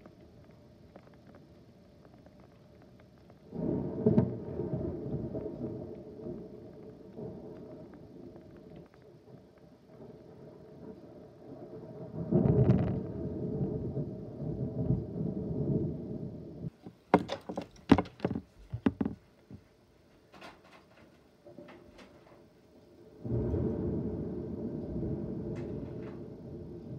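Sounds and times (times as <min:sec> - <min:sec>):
thunder rumbling: 0:00.0 - 0:19.6, 0:20.3 - 0:26.9
sharp knocks and clicks: 0:16.8 - 0:19.6.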